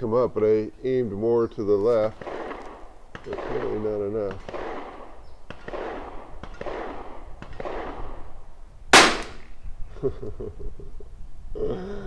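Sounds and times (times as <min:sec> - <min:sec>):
rifle shot: 0:09.0 - 0:09.5.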